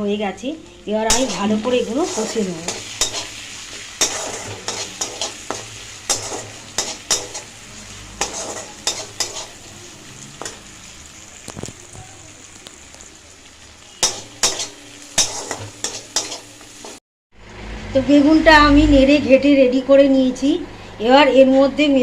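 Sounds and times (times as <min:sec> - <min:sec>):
frying sizzle: 0:00.0 - 0:17.6
spatula scraping and knocking pan: 0:01.1 - 0:07.4, 0:08.2 - 0:09.6.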